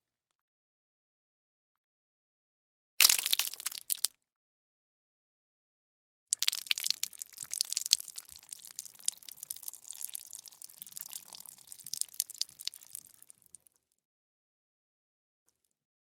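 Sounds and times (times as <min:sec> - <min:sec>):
dense crackle of small clicks: 0:06.4 - 0:13.5.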